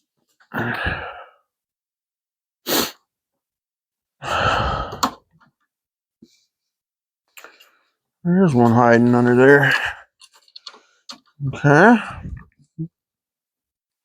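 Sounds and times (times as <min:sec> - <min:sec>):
man sniffing: 0:02.6 - 0:03.0
man exhaling heavily: 0:04.2 - 0:05.1.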